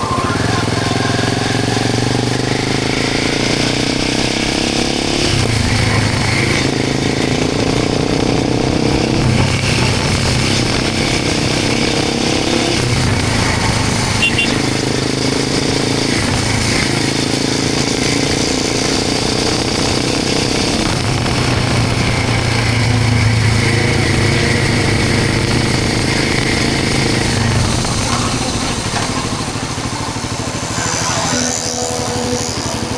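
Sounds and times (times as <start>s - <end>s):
motorcycle engine running: 0.0s - 32.9s.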